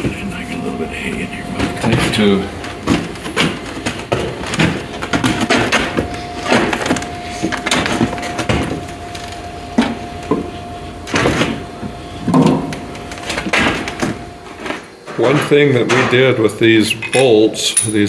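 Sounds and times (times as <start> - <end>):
steady tone: 0.0 - 3.7
engine parts knocking and clunking: 1.3 - 14.3.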